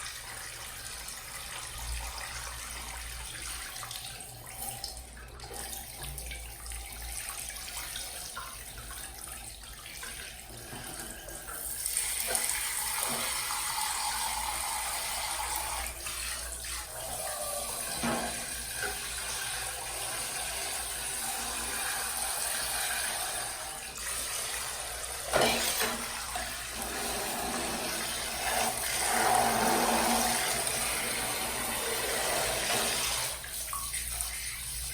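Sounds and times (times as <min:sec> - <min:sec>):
tap water running into sink: 0:00.0 - 0:34.9
knocks of items washed: 0:12.2 - 0:13.5, 0:17.8 - 0:19.2, 0:25.2 - 0:31.4.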